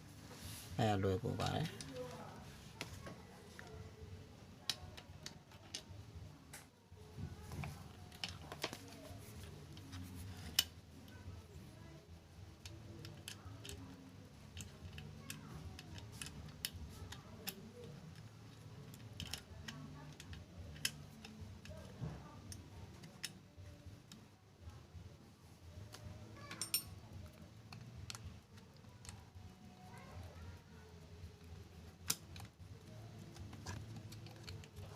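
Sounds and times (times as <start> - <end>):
low background hum: 0.0 - 34.9
light clicks and metallic taps: 25.9 - 34.9.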